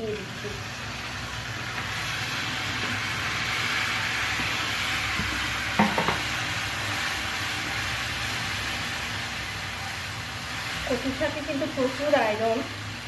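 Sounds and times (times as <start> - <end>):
oil sizzling in a pan: 0.0 - 13.0
utensil knocking against pan: 5.2 - 6.2.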